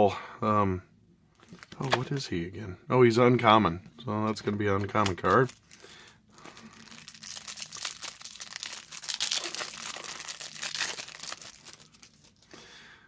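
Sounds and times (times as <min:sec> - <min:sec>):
cards shuffled by hand: 0:01.4 - 0:02.2, 0:04.2 - 0:12.5
foil wrapper crinkling: 0:01.4 - 0:02.2, 0:04.2 - 0:12.6.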